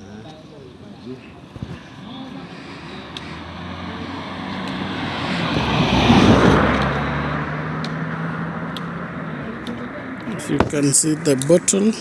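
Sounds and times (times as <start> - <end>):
vehicle passing on road: 0.0 - 12.0.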